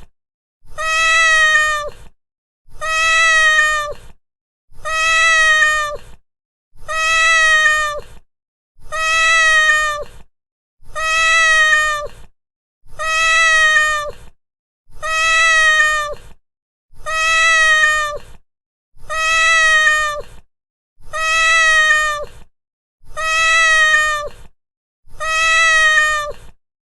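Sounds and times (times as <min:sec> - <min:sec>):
cat meowing: 0:00.7 - 0:02.0, 0:02.7 - 0:04.1, 0:04.8 - 0:06.1, 0:06.8 - 0:08.1, 0:08.8 - 0:10.2, 0:10.9 - 0:12.2, 0:12.9 - 0:14.2, 0:14.9 - 0:16.3, 0:17.0 - 0:18.4, 0:19.0 - 0:20.4, 0:21.0 - 0:22.4, 0:23.1 - 0:24.4, 0:25.1 - 0:26.5.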